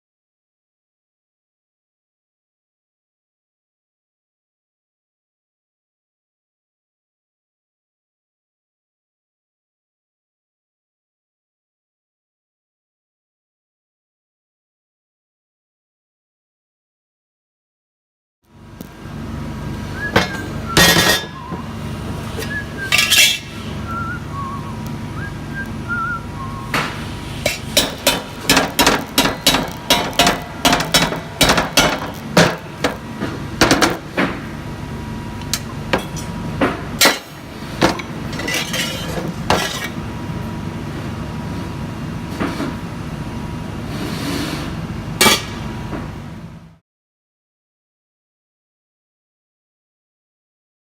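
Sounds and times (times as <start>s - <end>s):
steady low hum: 18.6s - 44.0s
sharp metallic knocks: 27.5s - 33.0s.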